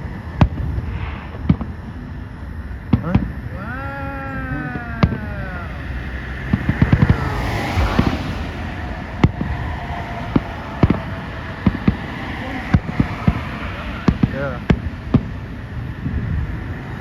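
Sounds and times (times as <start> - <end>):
rumble of distant explosions: 4.9 - 17.0.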